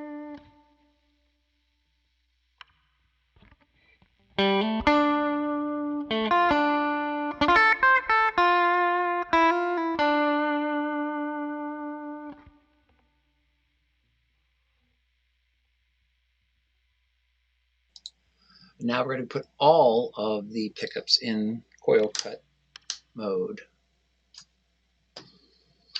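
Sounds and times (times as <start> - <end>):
electric guitar picked notes: 0.0 - 1.0, 3.4 - 12.7.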